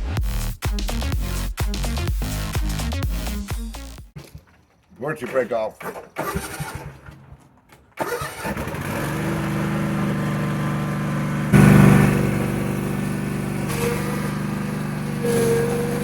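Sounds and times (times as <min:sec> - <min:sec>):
engine running and revving: 0:08.3 - 0:16.0.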